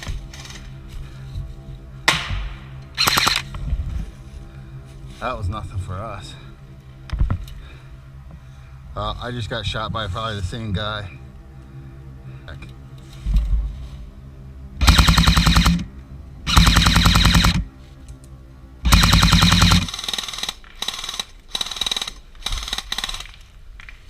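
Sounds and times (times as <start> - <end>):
airsoft gun firing bursts: 2.1 - 3.5, 14.8 - 15.9, 16.5 - 17.7, 18.9 - 23.4.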